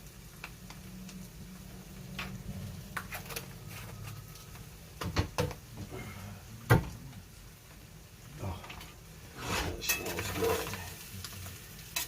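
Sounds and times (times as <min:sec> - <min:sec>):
food frying in a skillet: 0:00.0 - 0:12.0
utensil scraping a pan: 0:03.0 - 0:04.3, 0:09.2 - 0:11.0.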